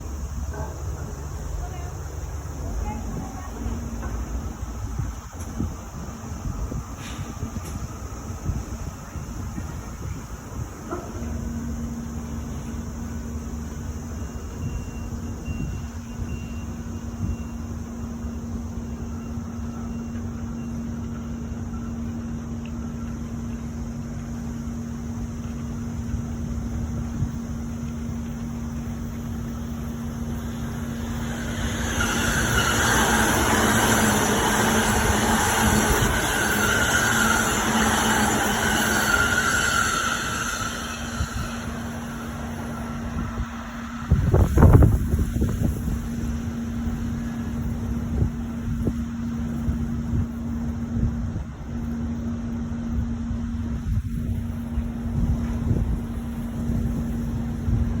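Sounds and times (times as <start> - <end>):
electric train rumbling: 0.0 - 58.0
rushing hissing noise: 23.7 - 51.0.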